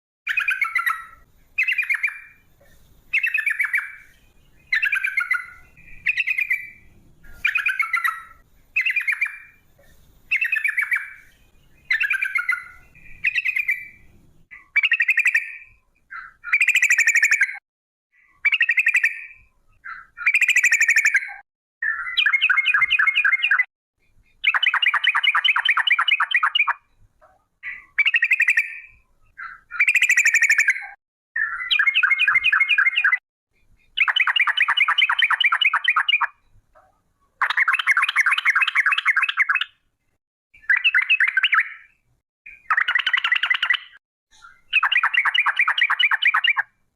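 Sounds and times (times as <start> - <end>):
bulbul singing trilled phrases: 0.3 - 2.4, 10.3 - 17.6, 18.2 - 27.0, 27.6 - 36.6, 37.4 - 39.8, 40.6 - 46.8.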